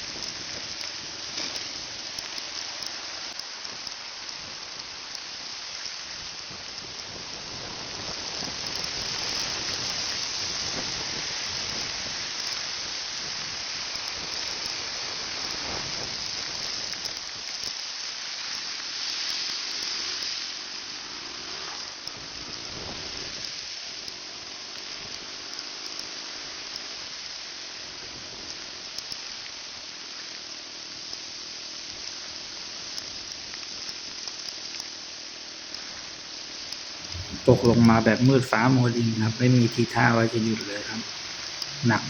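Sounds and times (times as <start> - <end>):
heavy rain hissing: 7.1 - 12.3, 37.0 - 42.0.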